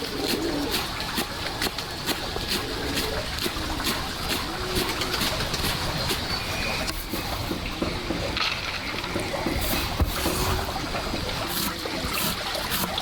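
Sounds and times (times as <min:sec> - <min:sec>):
dove cooing: 0:00.0 - 0:08.3.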